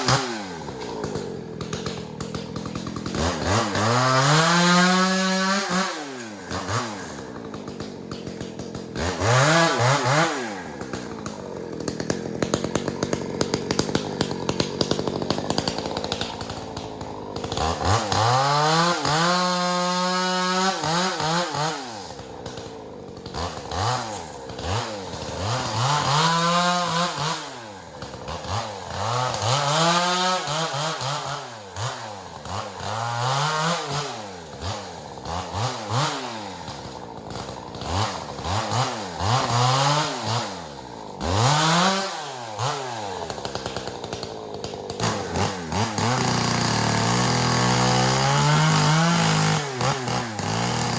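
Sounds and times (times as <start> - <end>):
chainsaw revving: 0.0 - 50.9.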